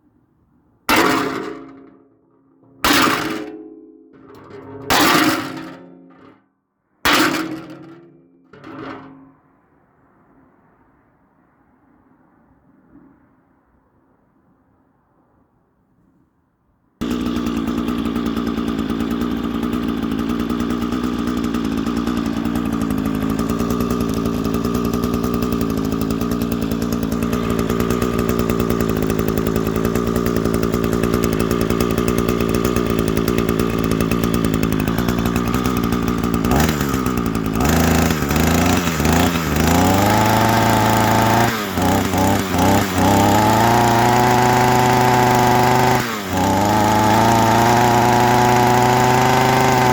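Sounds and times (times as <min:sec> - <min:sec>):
small engine revving: 0:17.0 - 0:49.9.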